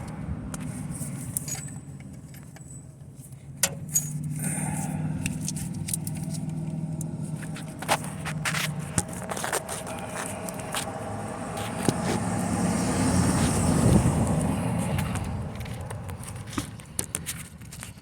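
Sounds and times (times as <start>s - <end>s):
metal tools clinking and scraping: 0.9s - 10.9s.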